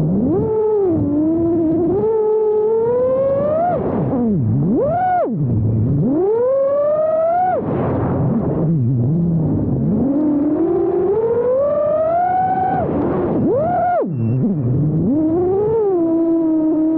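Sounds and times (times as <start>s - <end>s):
drone motors whining: 0.0s - 16.9s.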